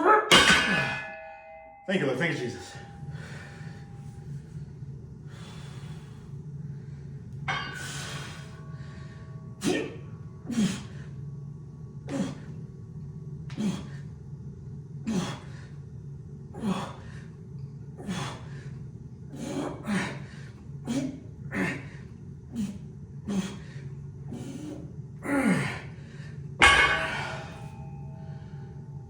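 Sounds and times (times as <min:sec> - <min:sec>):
steady low hum: 0:00.0 - 0:29.0
man breathing hard: 0:03.0 - 0:04.3, 0:05.2 - 0:07.1, 0:07.8 - 0:09.3, 0:18.0 - 0:28.8.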